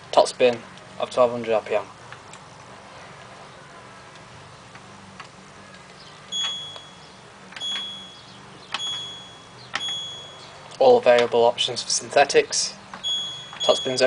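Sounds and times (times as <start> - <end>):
short high beep with click: 6.4 - 7.0, 13.0 - 14.0.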